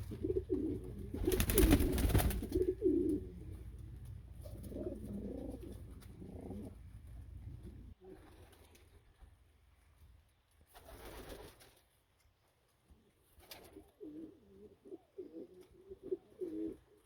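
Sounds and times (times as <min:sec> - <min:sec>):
pigeons cooing: 0:00.0 - 0:08.5, 0:13.8 - 0:17.0.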